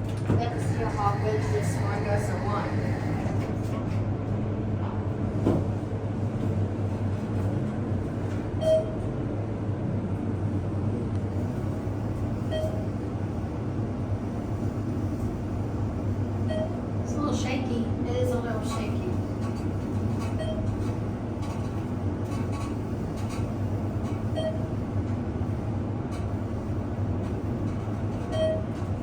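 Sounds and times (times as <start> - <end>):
elevator car humming: 0.0 - 29.0
short beeps: 8.6 - 9.0.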